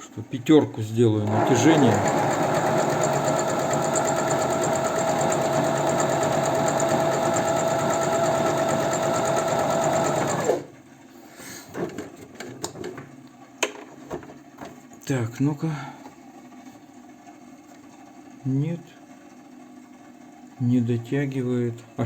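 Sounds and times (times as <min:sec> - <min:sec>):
sewing machine running: 0:01.2 - 0:10.7.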